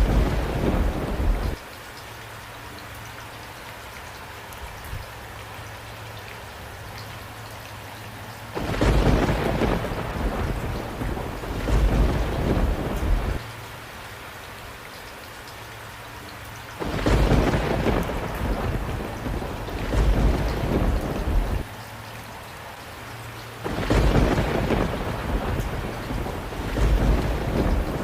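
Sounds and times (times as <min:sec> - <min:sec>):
thunder rumbling: 0:00.0 - 0:01.6, 0:08.6 - 0:13.4, 0:16.8 - 0:21.7, 0:23.6 - 0:28.0
rain hiss: 0:00.0 - 0:28.0.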